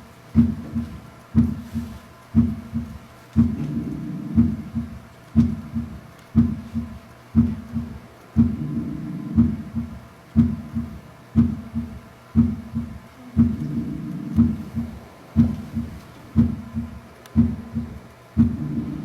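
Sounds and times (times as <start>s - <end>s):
heartbeat with gallop rhythm: 0.0s - 19.0s.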